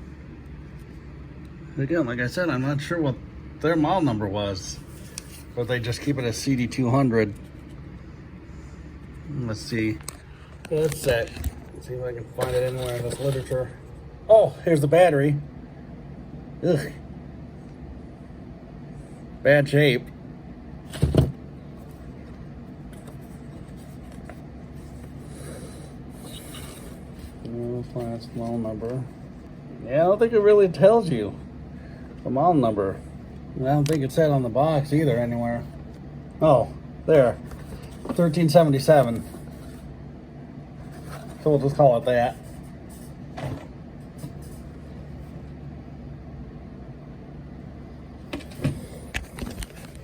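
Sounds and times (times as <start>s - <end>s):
steady low hum: 0.0s - 50.0s
paper leaflet rustling: 21.8s - 25.4s.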